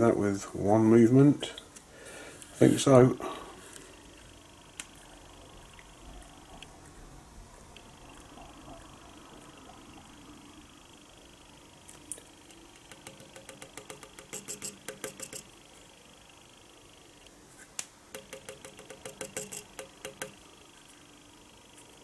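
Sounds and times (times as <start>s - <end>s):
rapid small clicks of dial indicator: 11.9s - 15.6s, 18.1s - 20.4s.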